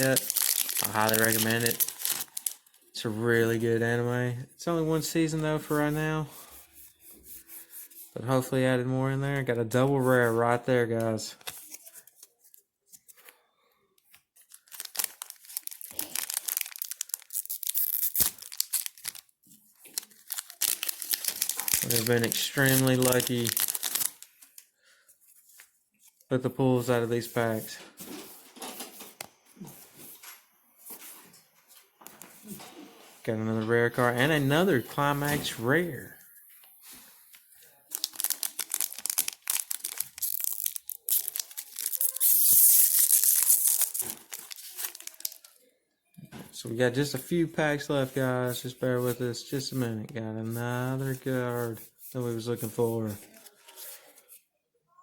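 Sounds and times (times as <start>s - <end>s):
foil wrapper tearing and crinkling: 0.0s - 2.8s, 14.4s - 24.7s, 37.8s - 45.6s.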